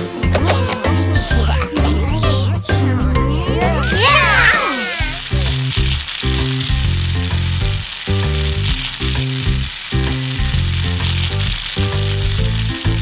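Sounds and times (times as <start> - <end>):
bouncy children's music: 0.0 - 13.0
air hissing out of balloons: 3.8 - 13.0.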